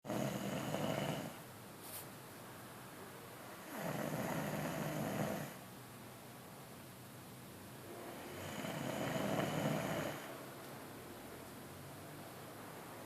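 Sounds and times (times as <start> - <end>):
person snoring: 0.1 - 1.4, 3.6 - 5.6, 7.9 - 10.3.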